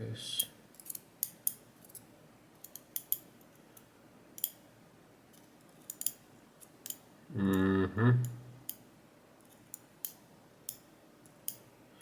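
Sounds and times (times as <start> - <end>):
small sharp metal clicks: 0.7 - 4.6, 5.4 - 7.0, 9.5 - 11.7
person humming: 7.3 - 8.6.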